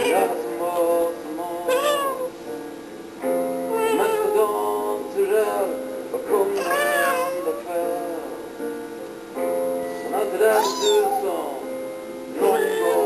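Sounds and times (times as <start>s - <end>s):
hold music: 0.0s - 13.0s
person imitating cat meows: 6.6s - 7.5s, 10.5s - 11.3s.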